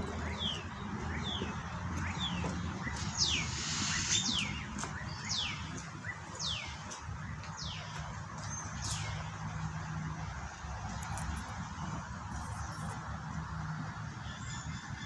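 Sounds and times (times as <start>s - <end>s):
steady low rumble: 0.0s - 8.7s
bird chirps: 0.2s - 6.9s.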